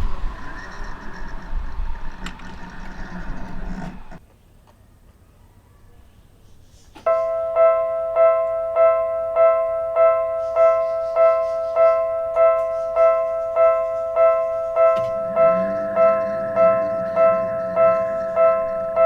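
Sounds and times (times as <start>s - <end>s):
low rumble: 0.0s - 4.2s, 13.9s - 19.0s
level-crossing warning bell ringing: 7.1s - 19.0s.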